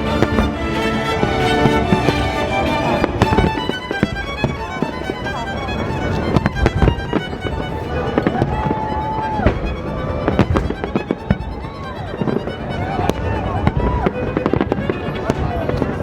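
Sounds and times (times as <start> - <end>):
violin music: 0.0 - 16.0
fireworks bangs and crackles: 0.2 - 0.5.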